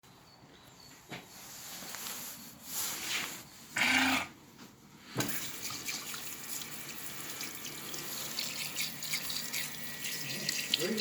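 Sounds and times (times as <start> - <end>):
tap water running onto hands: 5.2 - 11.0.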